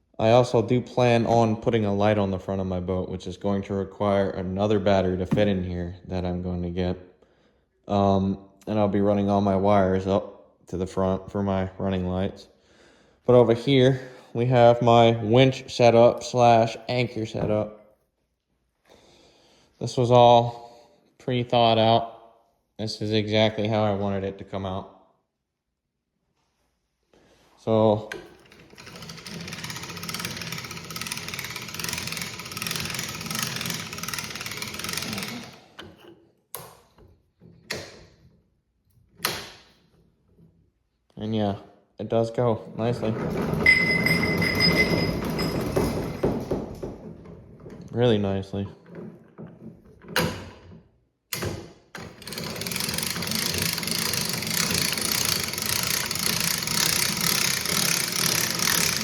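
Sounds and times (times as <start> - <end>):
electric winch motor humming: 28.4 - 35.8, 43.1 - 46.0, 52.1 - 59.0.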